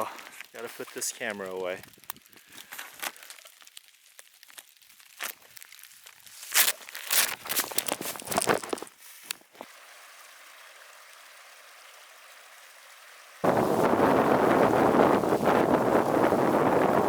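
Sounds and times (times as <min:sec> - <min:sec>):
camera handling rustles: 0:06.4 - 0:09.5
wind buffeting microphone: 0:13.4 - 0:17.0.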